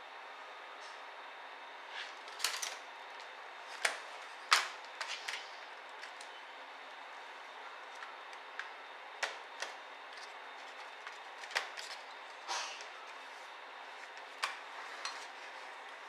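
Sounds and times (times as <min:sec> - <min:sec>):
laptop parts clicking and tapping: 0:07.9 - 0:12.1.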